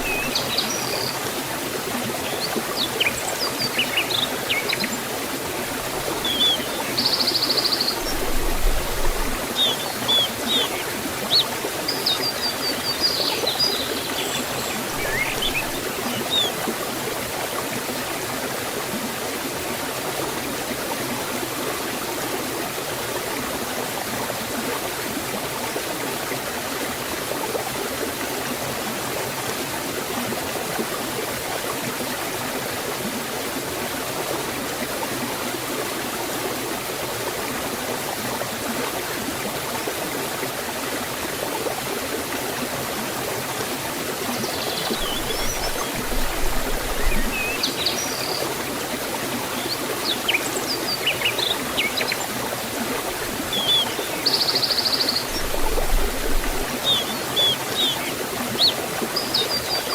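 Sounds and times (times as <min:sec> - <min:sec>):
birds chirping and singing: 0:00.0 - 0:00.9, 0:09.0 - 0:16.5, 0:44.6 - 0:48.4, 0:53.6 - 0:59.9
stream and waterfall rushing: 0:00.0 - 0:59.9.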